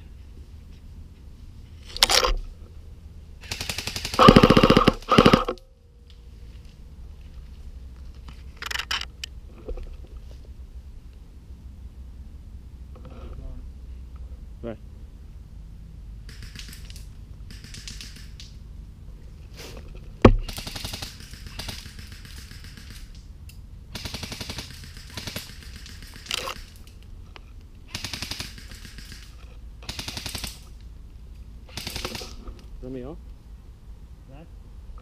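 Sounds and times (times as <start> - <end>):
airsoft guns firing bursts: 3.4 - 5.5, 16.3 - 18.4, 20.4 - 23.2, 23.9 - 26.8, 27.9 - 30.7, 31.7 - 32.4.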